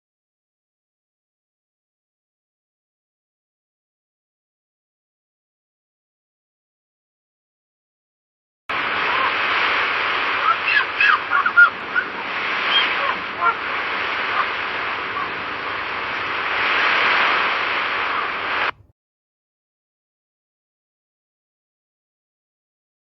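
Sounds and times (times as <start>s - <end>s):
birds chirping: 8.7s - 18.7s
sea waves washing on shore: 8.7s - 18.9s.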